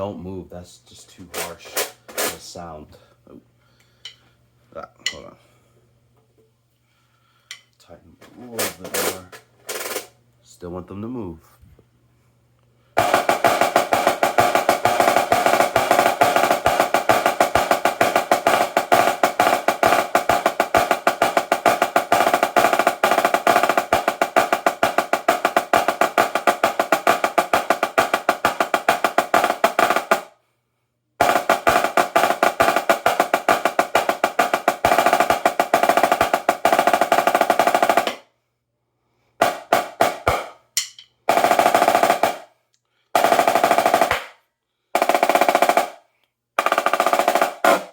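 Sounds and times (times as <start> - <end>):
snare drum rolls: 8.4 - 10.1, 13.0 - 30.3, 31.2 - 38.2, 39.4 - 40.6, 41.3 - 42.5, 43.2 - 44.4, 45.0 - 46.0, 46.6 - 47.9.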